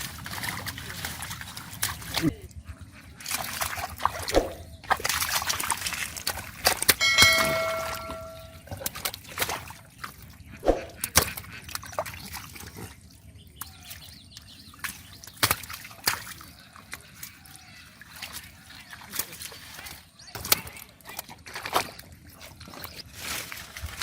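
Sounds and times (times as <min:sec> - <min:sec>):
water sloshing and splashing: 0:00.0 - 0:24.0
brief steady tone: 0:07.0 - 0:08.6.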